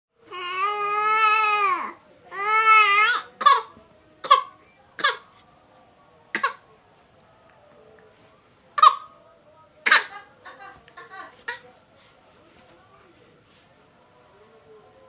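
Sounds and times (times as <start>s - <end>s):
baby crying: 0.3s - 3.7s
baby coughing: 3.0s - 5.2s, 6.3s - 6.6s, 8.8s - 9.1s, 9.8s - 10.2s.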